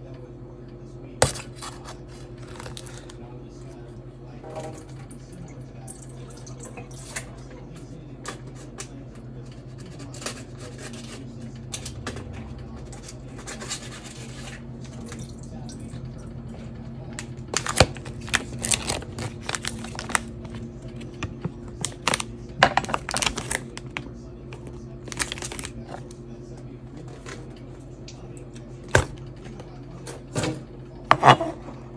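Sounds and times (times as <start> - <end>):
steady low hum: 0.0 - 31.9
water running: 4.5 - 7.3
kitchen knocks and clatters: 17.2 - 23.6.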